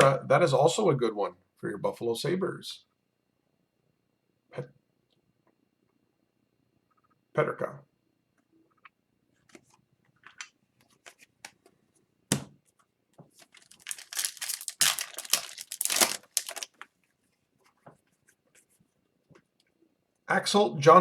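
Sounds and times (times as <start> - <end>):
packaging rustling and crackling: 13.4 - 17.0.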